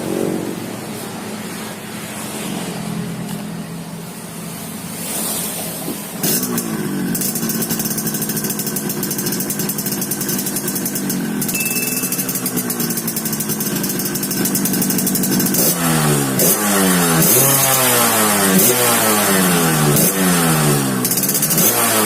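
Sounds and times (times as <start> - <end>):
motorcycle throttle blips: 5.1 - 18.7
motorcycle engine idling: 5.7 - 22.0.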